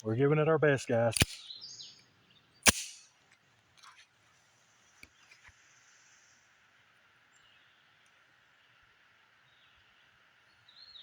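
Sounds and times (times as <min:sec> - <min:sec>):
faint outdoor ambience: 0:00.0 - 0:11.0
pistol shot: 0:01.1 - 0:01.4, 0:02.7 - 0:03.0
small clicks: 0:01.1 - 0:01.4.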